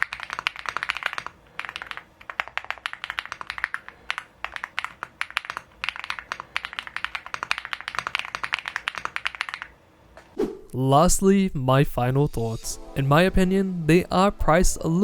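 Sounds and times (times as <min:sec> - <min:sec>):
mechanical keyboard keystroke clacks: 0:00.0 - 0:09.7.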